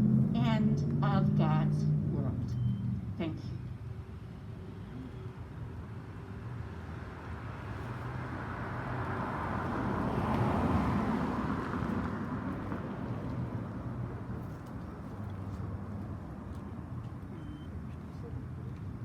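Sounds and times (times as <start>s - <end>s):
vehicle passing: 0.0s - 3.6s, 7.4s - 14.3s
steady low traffic hum: 0.0s - 19.0s.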